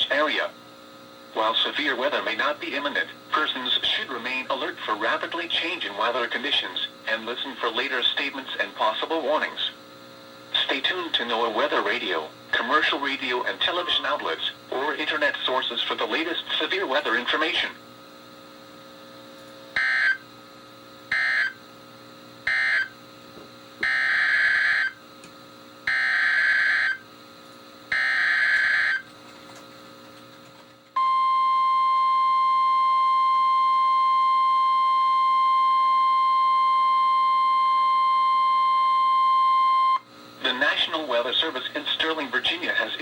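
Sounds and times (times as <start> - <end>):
steady warning alarm tone: 19.8 - 20.3, 21.1 - 21.6, 22.4 - 23.0, 23.8 - 25.0, 25.9 - 27.0, 27.9 - 29.1, 31.0 - 40.0.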